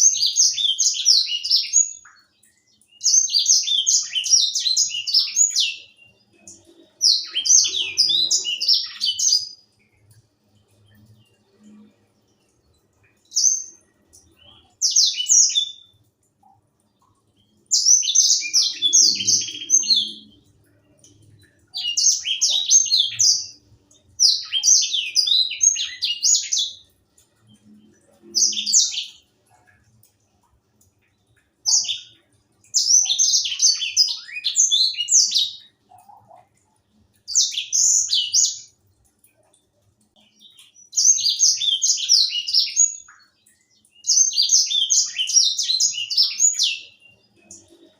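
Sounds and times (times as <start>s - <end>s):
finch singing high twittering song: 0.0s - 10.2s, 17.4s - 26.9s.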